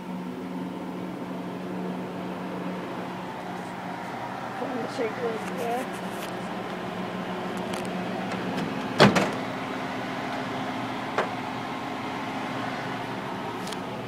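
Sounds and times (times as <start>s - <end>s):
microwave oven humming: 0.0s - 14.0s.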